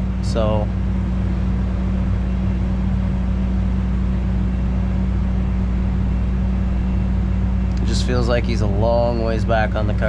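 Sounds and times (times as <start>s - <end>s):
tractor engine running: 0.0s - 10.0s.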